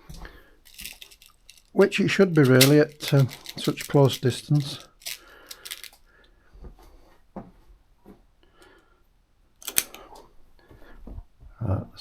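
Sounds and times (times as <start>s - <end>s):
handling knocks and rustles: 0.0s - 6.0s.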